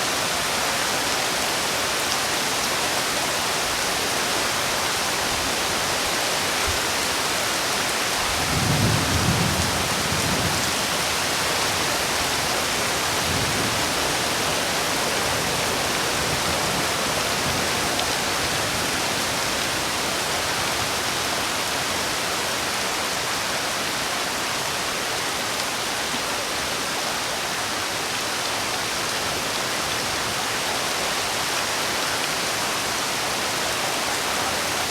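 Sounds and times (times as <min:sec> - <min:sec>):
heavy rain hissing: 0:00.0 - 0:25.0.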